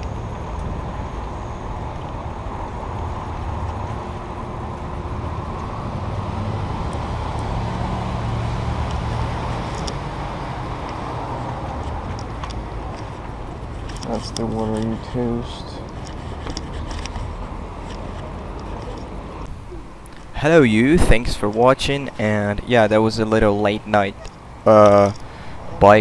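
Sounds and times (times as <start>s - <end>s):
motor traffic: 0.0s - 26.0s
wind and road noise: 0.0s - 26.0s.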